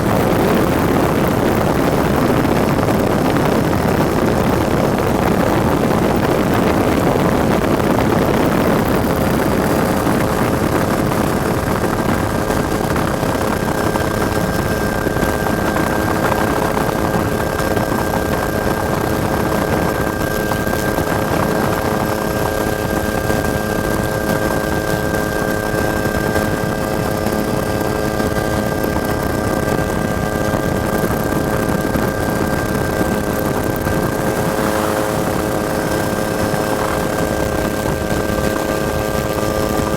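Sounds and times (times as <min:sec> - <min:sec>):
helicopter engine and rotor: 0:00.0 - 0:39.9
heavy rushing noise: 0:31.5 - 0:39.9.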